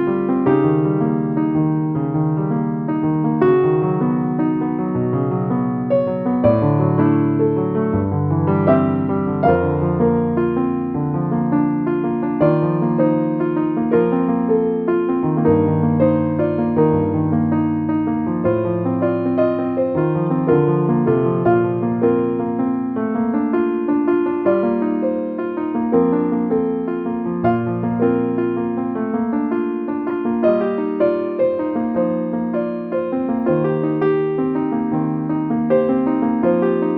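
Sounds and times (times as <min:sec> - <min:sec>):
piano music: 0:00.0 - 0:36.9.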